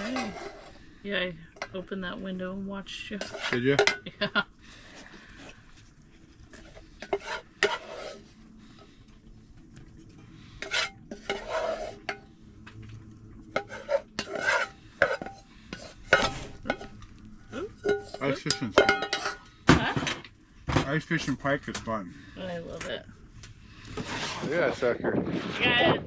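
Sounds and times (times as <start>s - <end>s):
metal utensil scraping in pan: 0.0s - 5.6s, 6.4s - 8.9s, 10.2s - 12.4s, 13.5s - 21.9s, 23.9s - 24.8s.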